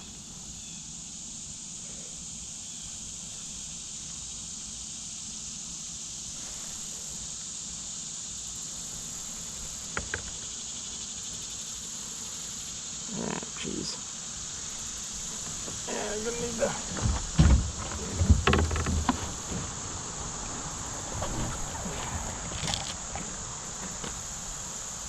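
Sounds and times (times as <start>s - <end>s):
insects buzzing: 0.0s - 25.0s
low rumbling: 15.8s - 24.4s.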